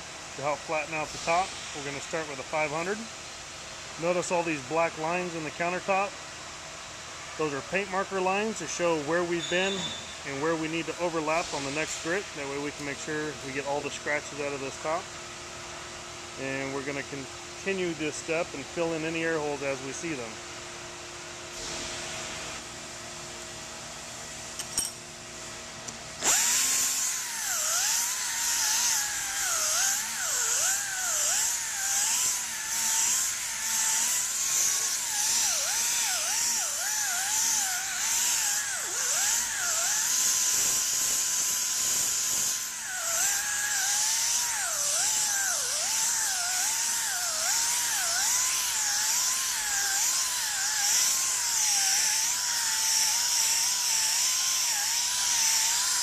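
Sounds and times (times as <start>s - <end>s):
stone polisher grinding granite: 26.3s - 56.0s.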